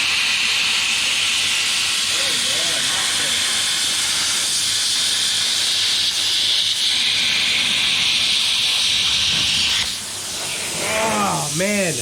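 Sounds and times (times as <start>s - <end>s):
plasma cutter hissing: 0.0s - 12.0s.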